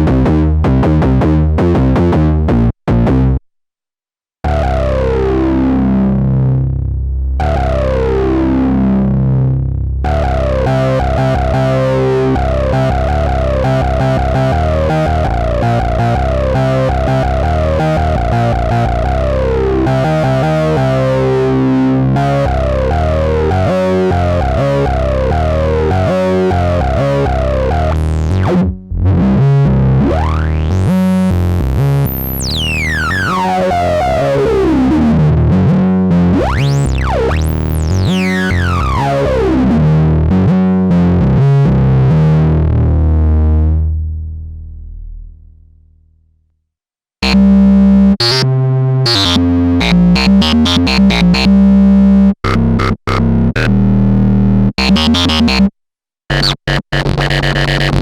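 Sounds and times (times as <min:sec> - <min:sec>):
synthesizer pitch sweeps: 0:47.2 - 0:47.5, 0:48.2 - 0:51.6, 0:52.4 - 0:53.9, 0:54.8 - 0:55.7
synthesizer sequenced pattern: 0:47.2 - 0:47.6, 0:48.2 - 0:53.9, 0:54.8 - 0:55.7, 0:56.3 - 0:58.0.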